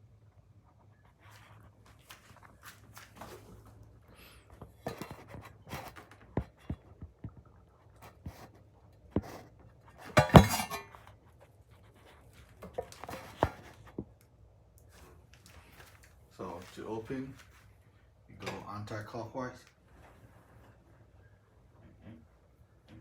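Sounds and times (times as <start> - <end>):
metal clinks and knocks: 10.1 - 11.0.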